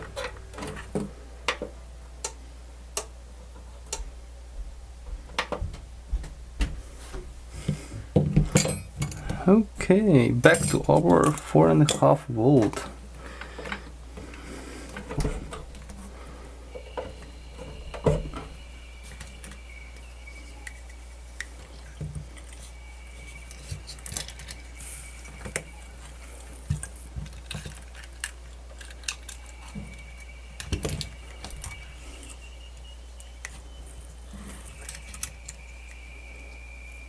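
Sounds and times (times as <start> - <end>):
high thin whine: 0.0 - 27.2, 29.2 - 37.0
low electrical hum: 0.0 - 37.0.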